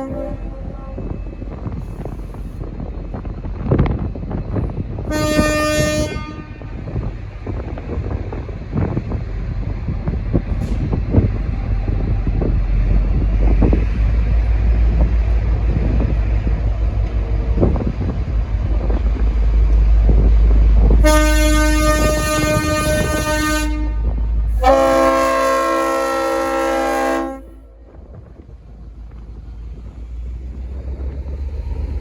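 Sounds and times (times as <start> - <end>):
locomotive horn blast: 0.0 - 1.3, 5.1 - 6.7, 21.0 - 27.8
diesel locomotive engine rumble: 0.0 - 32.0.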